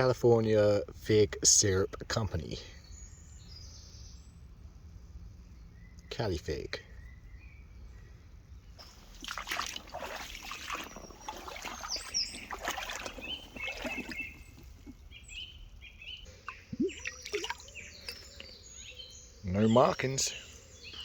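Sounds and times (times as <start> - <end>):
birds chirping and whistling: 1.7 - 4.5, 5.3 - 21.0
stream water splashing: 8.8 - 18.5.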